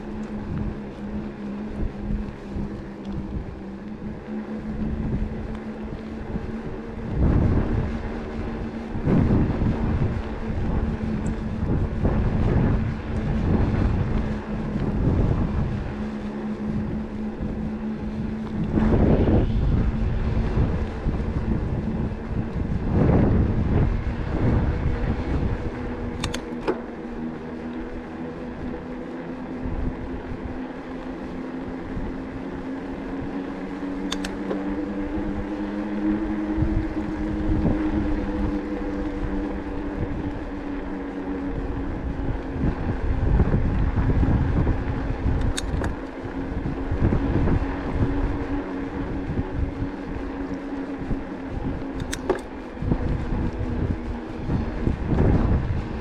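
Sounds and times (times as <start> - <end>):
electric bike motor whining: 0.0 - 56.0
wind rumbling on microphone: 0.0 - 56.0
sharp clicks: 26.1 - 26.8, 34.0 - 34.6, 45.3 - 46.1, 51.9 - 52.5.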